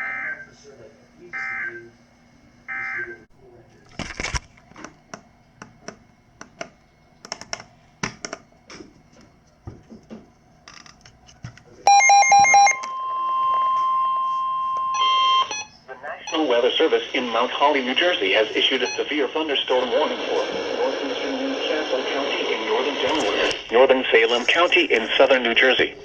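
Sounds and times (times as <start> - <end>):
steady single-pitch alarm tone: 11.9 - 17.5.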